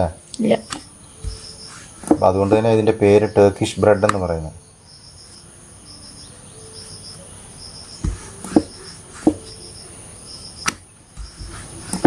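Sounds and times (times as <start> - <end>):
crickets chirping: 0.0 - 12.0
rolling pin knocking on board: 8.0 - 9.5.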